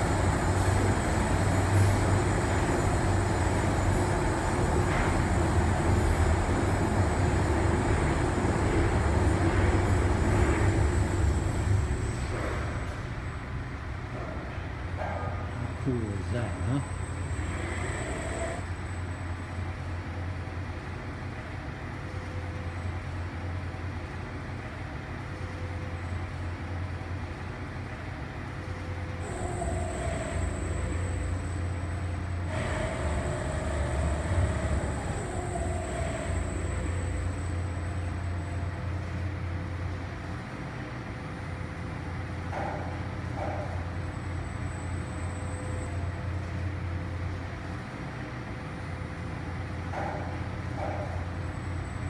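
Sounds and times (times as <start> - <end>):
machinery low rumble: 0.0 - 28.0, 28.7 - 52.0
higher motor tones: 29.2 - 38.8.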